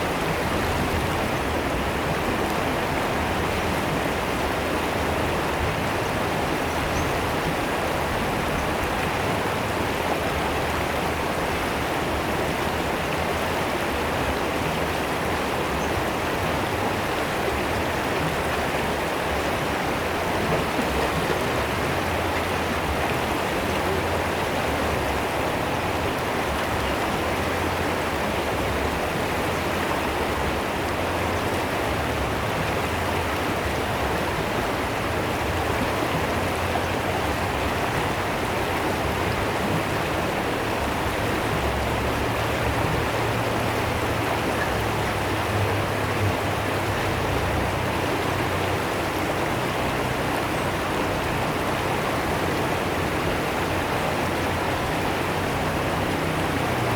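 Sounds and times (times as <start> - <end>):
river water splashing: 0.0 - 56.9.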